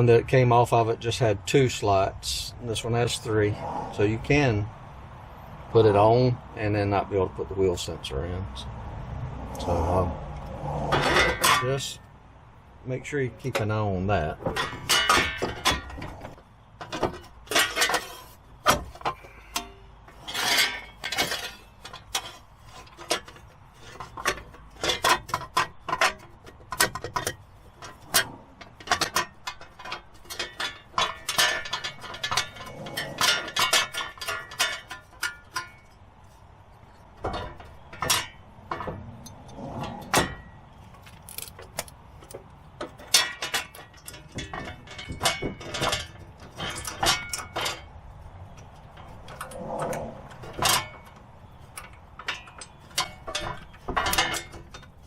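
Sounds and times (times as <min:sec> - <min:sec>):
metal tools clinking and knocking: 0:10.9 - 0:12.1, 0:13.4 - 0:55.0.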